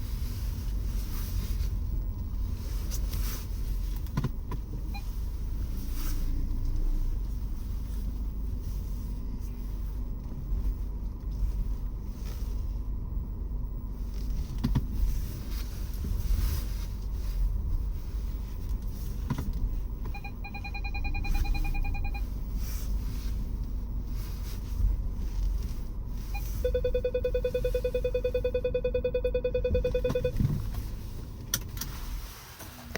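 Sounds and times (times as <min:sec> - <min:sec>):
car cabin road rumble: 0:00.0 - 0:32.9
rapid electronic beeping: 0:20.1 - 0:22.2, 0:26.3 - 0:30.4.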